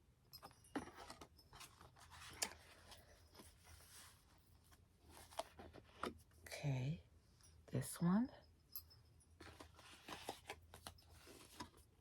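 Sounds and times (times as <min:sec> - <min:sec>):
faint rustling of cards: 0:00.8 - 0:06.4, 0:09.4 - 0:12.0.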